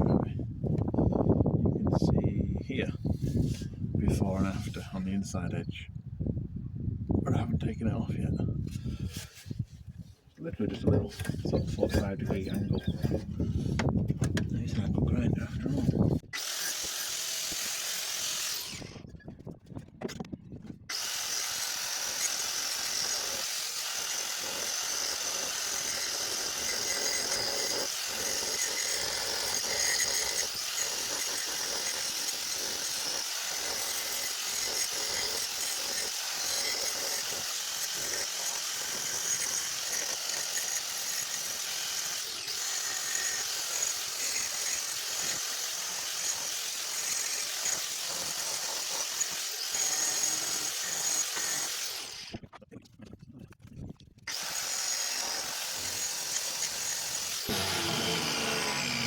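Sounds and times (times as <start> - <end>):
angle grinder whining: 15.8 - 19.0, 20.9 - 52.4, 54.3 - 59.0.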